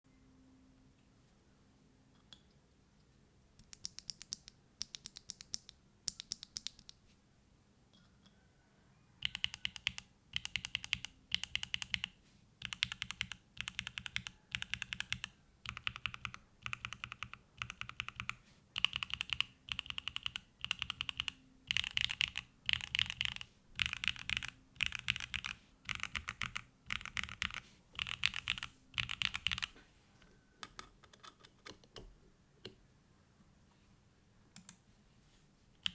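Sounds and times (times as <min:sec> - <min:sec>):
mechanical keyboard typing: 0:03.6 - 0:07.0, 0:09.2 - 0:29.8.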